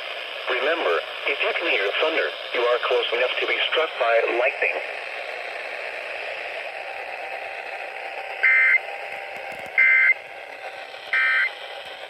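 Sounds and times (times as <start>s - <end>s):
radio broadcast hiss: 0.5s - 5.0s.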